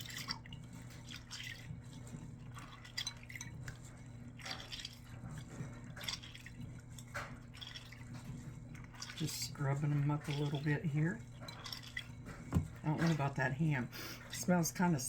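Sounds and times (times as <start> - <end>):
water splashing and dripping: 0.0 - 14.7
hands rubbing beans in water: 0.0 - 15.0.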